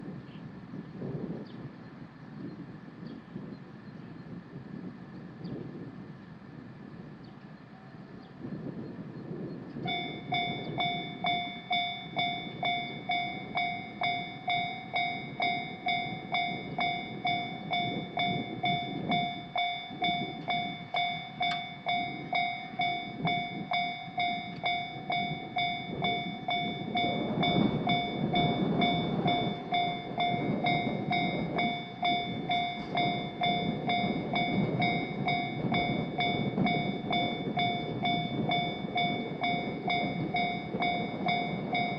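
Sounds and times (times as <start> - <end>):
train rumbling past: 0.0 - 41.9
level crossing warning bell: 9.7 - 41.9.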